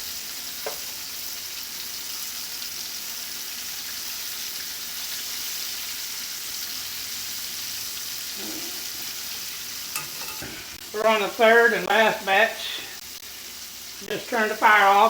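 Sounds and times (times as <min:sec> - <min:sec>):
shrimp sizzling in hot oil: 0:00.0 - 0:15.0.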